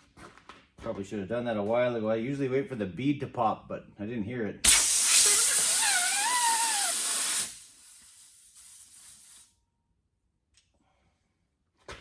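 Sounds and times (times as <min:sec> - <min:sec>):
air hissing from tire valve: 0:04.7 - 0:09.5
wavering whistle: 0:04.8 - 0:07.6.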